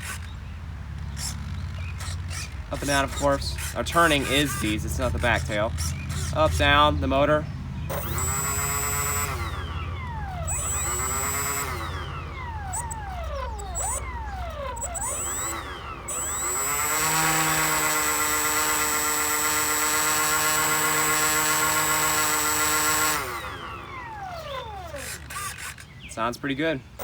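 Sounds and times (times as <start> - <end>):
electric ducted fan whine: 0.0 - 27.0.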